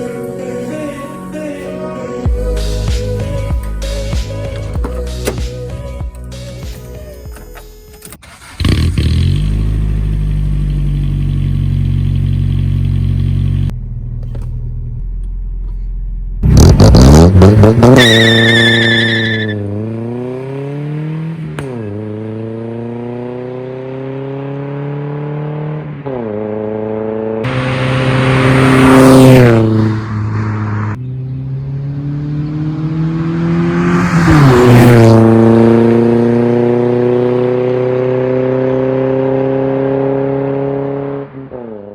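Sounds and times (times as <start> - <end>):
car engine accelerating: 8.2 - 41.9.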